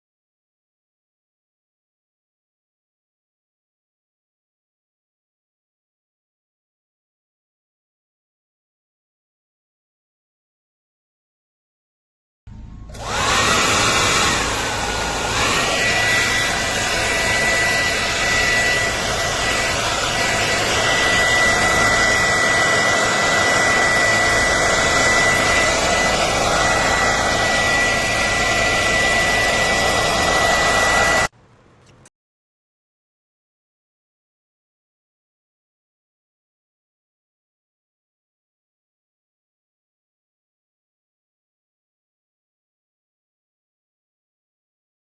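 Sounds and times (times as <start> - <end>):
hair dryer running: 12.9 - 31.3.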